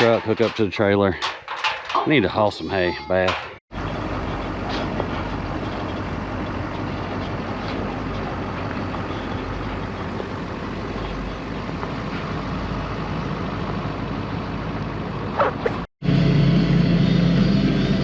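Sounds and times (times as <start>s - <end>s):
vehicle engine humming: 3.8s - 15.9s.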